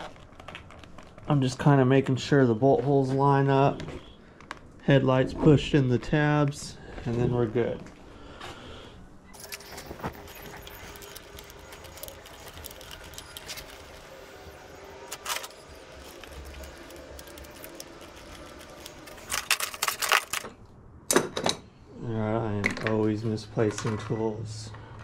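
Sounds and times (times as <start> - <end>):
parts clicking and knocking: 15.1 - 21.7.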